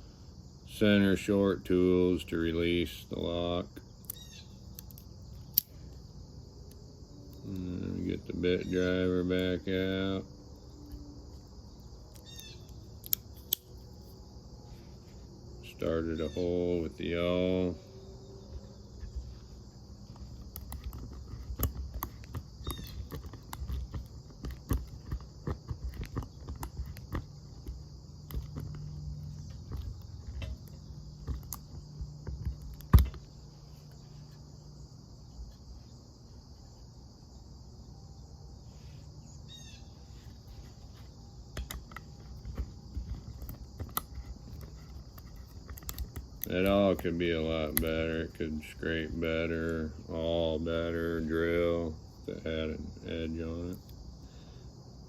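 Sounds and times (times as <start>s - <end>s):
insects chirring: 0.0s - 55.0s.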